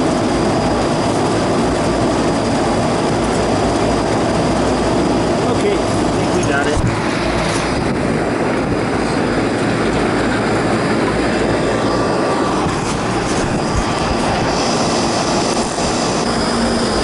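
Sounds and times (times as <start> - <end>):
air conditioning fans rushing: 0.0 - 17.0.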